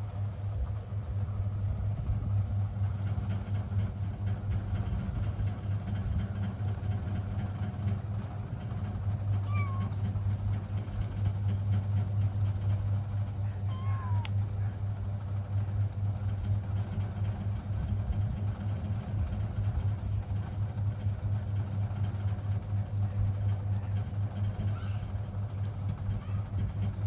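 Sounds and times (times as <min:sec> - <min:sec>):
steady low hum: 0:00.0 - 0:27.0
cat meowing: 0:09.4 - 0:10.0, 0:13.5 - 0:14.4.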